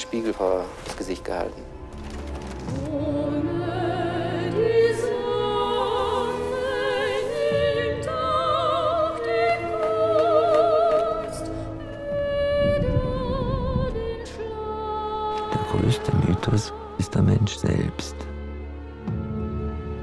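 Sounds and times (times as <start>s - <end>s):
operatic singing voices: 2.6s - 19.2s.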